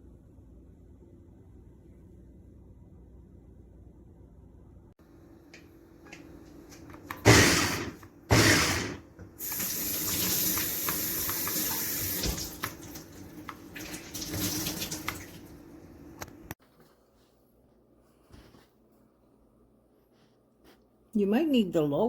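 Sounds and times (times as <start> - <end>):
tap running into sink: 9.2 - 15.4.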